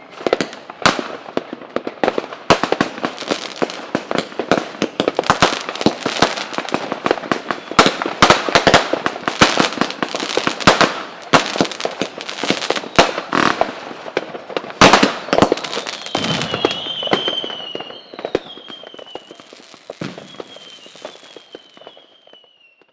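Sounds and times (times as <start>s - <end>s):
fireworks bangs and crackles: 0.0s - 22.9s
high whistle sliding downward: 15.8s - 22.9s.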